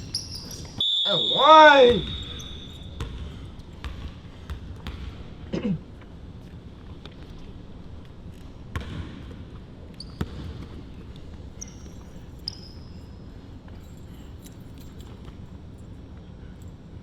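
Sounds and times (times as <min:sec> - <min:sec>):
sneakers squeaking: 0:00.0 - 0:05.2, 0:09.9 - 0:15.6
basketball bouncing: 0:01.9 - 0:05.3, 0:08.7 - 0:09.4, 0:10.2 - 0:11.3.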